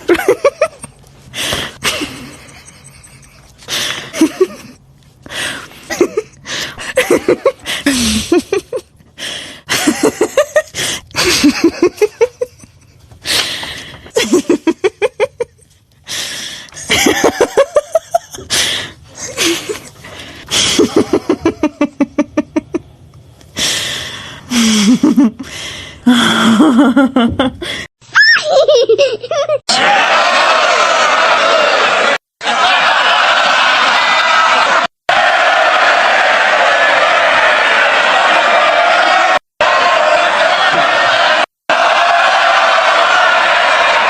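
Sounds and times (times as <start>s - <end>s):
human laughter: 0.0s - 4.8s, 5.6s - 9.0s, 9.7s - 13.0s, 14.0s - 15.7s, 16.7s - 18.5s, 19.2s - 22.9s, 24.5s - 25.5s, 26.1s - 34.9s.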